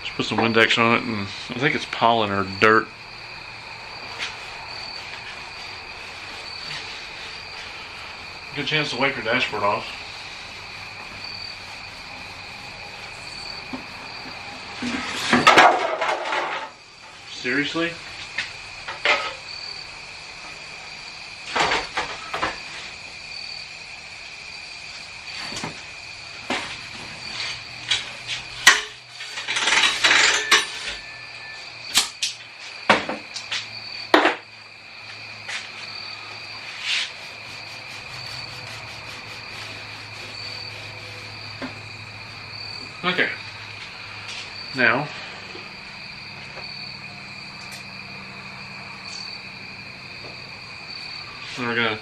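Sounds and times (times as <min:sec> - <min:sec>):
cricket trill: 0:00.0 - 0:52.0
rustling and scraping: 0:03.9 - 0:16.8, 0:25.3 - 0:31.2, 0:32.4 - 0:45.8
high-pitched two-tone whine: 0:30.2 - 0:32.0.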